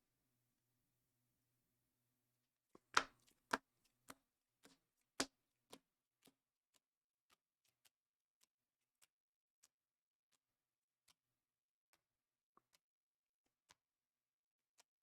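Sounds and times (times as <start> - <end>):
sharp clicks or taps: 2.8 - 3.2.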